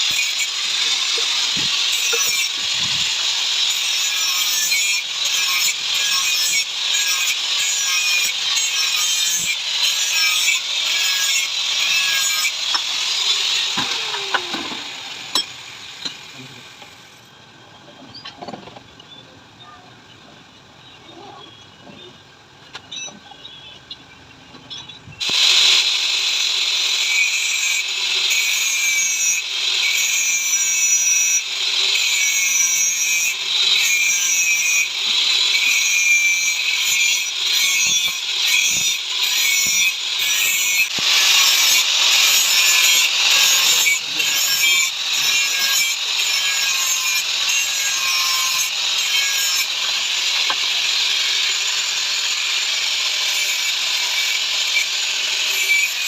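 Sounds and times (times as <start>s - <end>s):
power tool hissing on metal: 0.0s - 17.3s, 25.2s - 56.0s.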